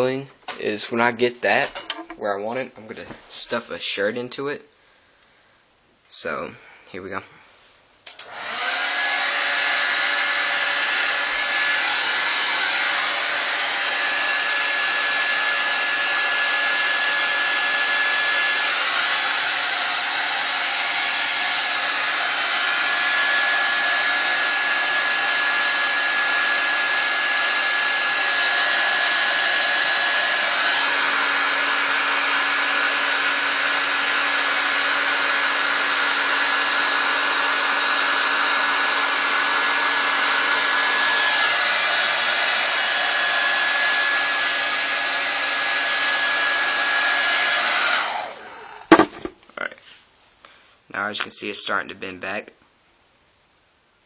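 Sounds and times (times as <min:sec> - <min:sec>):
blow dryer running: 0:08.1 - 0:49.3.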